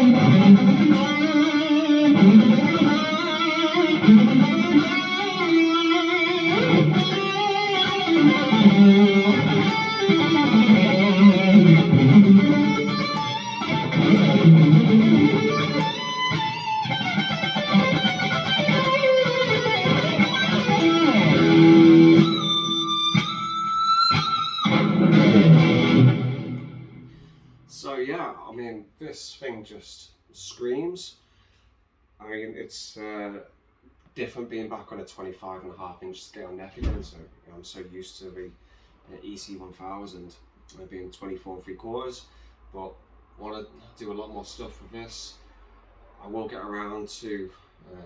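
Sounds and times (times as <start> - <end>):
electric guitar solo: 0.0 - 27.3.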